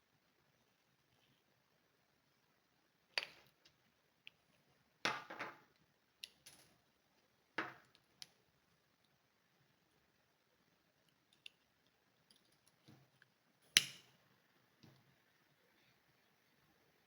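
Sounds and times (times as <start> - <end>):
sharp clicks of small tools: 13.8 - 14.1.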